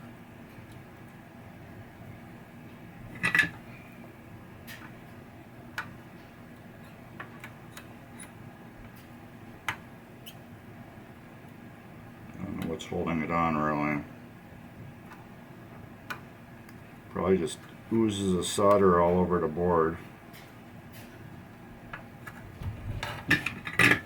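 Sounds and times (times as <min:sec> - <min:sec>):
faint steady hum: 0:00.0 - 0:24.0.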